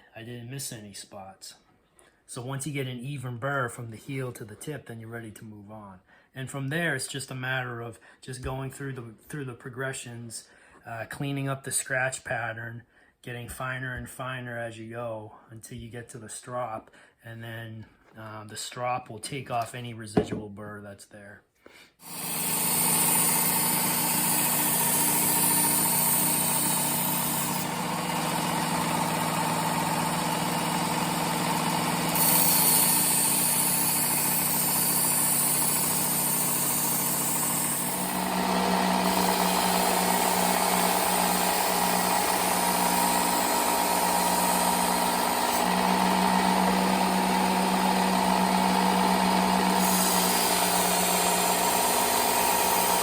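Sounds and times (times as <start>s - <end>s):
belt sander motor hum: 22.1s - 53.0s.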